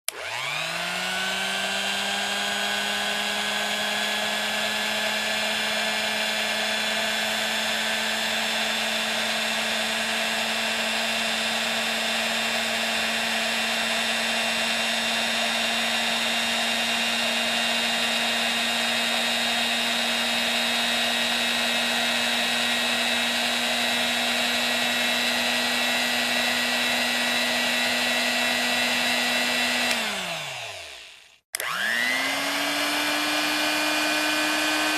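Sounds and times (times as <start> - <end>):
electric mixer motor whining: 0.0 - 34.9.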